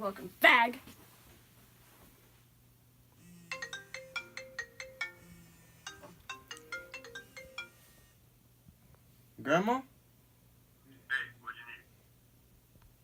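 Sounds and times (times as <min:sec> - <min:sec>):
mobile phone ringtone melody: 0:03.2 - 0:08.2.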